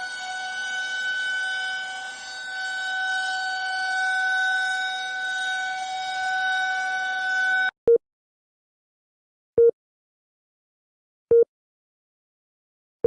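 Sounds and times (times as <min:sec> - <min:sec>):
steady emergency siren: 0:00.0 - 0:07.8.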